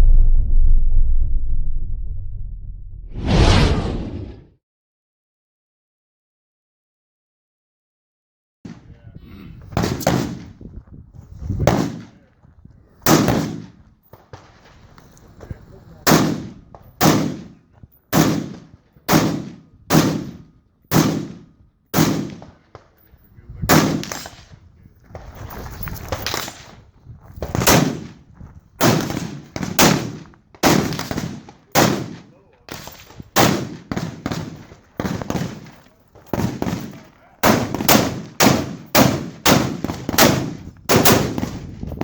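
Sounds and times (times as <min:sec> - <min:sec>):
rifle shots with echo: 0:09.8 - 0:10.6, 0:11.7 - 0:12.2, 0:13.0 - 0:13.8, 0:16.0 - 0:22.9, 0:23.7 - 0:24.6, 0:27.6 - 0:28.2, 0:28.8 - 0:41.7.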